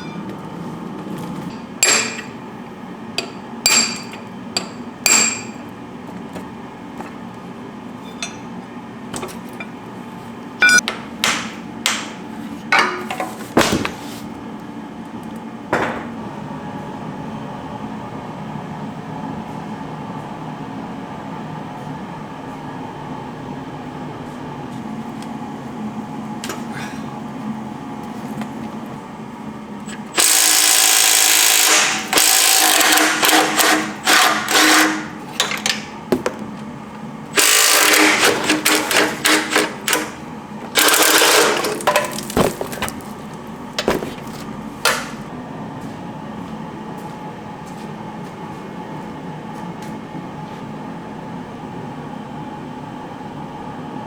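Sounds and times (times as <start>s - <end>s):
loud power tool running: 30.0s - 35.8s, 37.3s - 43.0s.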